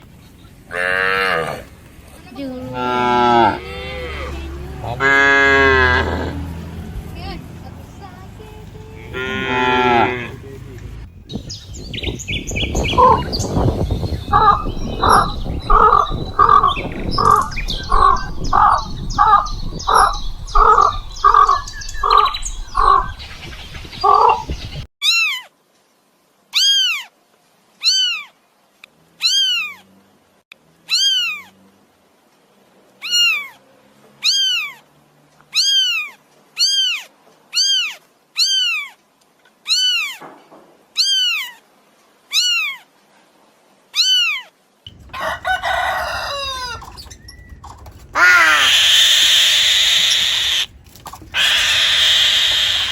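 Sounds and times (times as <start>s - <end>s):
repeating animal call: 2.6s - 6.5s, 12.9s - 13.3s, 14.3s - 23.2s, 24.0s - 25.5s, 48.2s - 50.7s, 51.3s - 52.9s.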